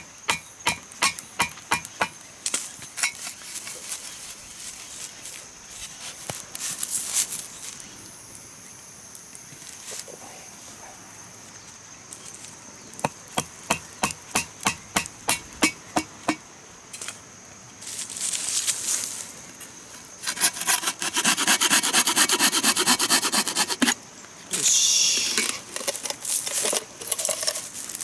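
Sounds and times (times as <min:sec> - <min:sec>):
rasping strokes: 0:20.2 - 0:24.0.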